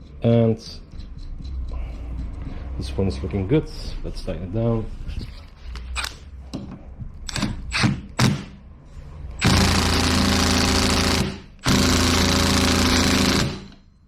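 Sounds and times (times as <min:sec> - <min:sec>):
impact wrench hammering: 0:07.3 - 0:08.6, 0:09.4 - 0:13.9.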